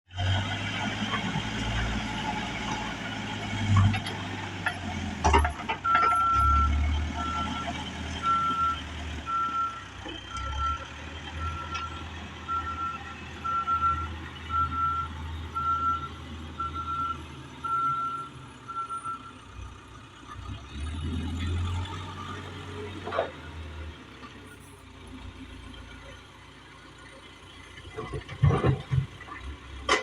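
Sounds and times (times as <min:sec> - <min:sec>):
diesel engine rumble: 0:00.1 - 0:30.0
reversing alarm beeping: 0:05.8 - 0:19.4.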